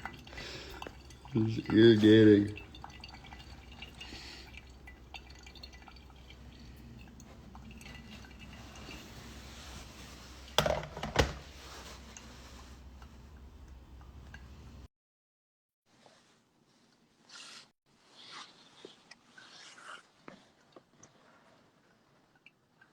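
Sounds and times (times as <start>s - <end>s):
coffee dripping and trickling: 0.0s - 14.9s.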